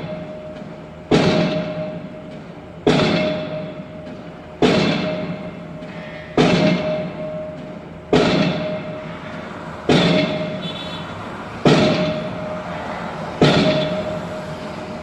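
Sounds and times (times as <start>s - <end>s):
pile driver hammering: 0.0s - 15.0s.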